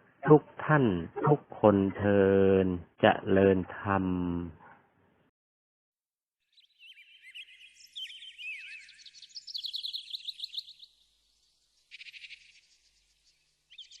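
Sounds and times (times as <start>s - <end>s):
birds chirping in trills: 6.6s - 11.2s.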